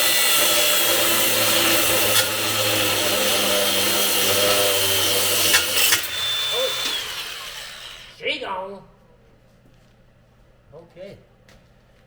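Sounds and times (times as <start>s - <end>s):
power drill with high whine: 0.0s - 8.2s.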